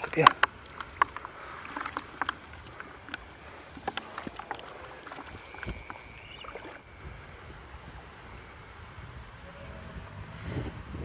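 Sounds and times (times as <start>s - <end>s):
water splashes: 0.0s - 7.2s
wind rumbling on microphone: 0.0s - 11.0s.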